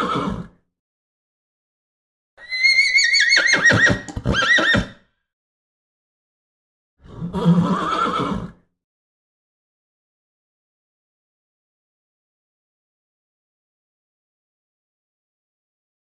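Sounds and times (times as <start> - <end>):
horse whinnying: 0.0 - 0.5, 2.4 - 5.0, 7.0 - 8.6.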